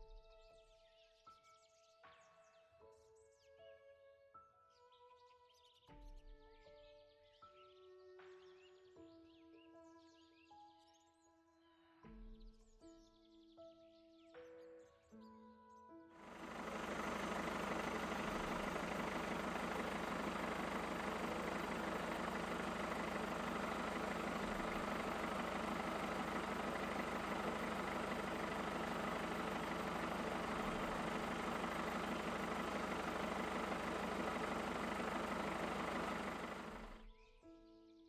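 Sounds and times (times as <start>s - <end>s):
steady mechanical noise: 16.2s - 37.0s.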